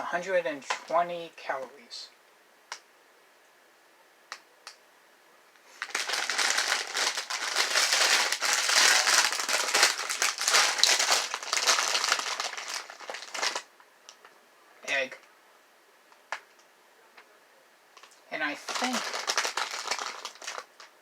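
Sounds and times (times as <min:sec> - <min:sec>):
candy bag crinkling: 0:05.7 - 0:13.7, 0:18.0 - 0:21.0.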